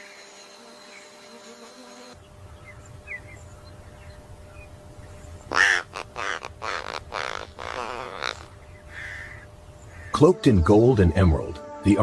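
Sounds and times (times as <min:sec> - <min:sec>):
bird rasping calls: 0:04.5 - 0:10.2.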